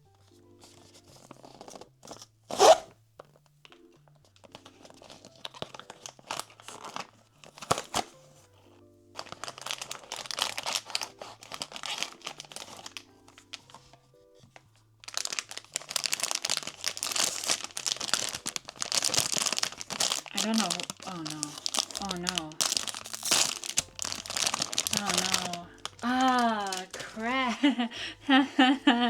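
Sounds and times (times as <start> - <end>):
rustling: 0.0 - 27.8
plastic wrapping crinkling: 0.0 - 27.9
soft background music: 0.0 - 29.0
packaging tearing snap: 4.4 - 8.2, 9.2 - 14.0, 15.1 - 27.3.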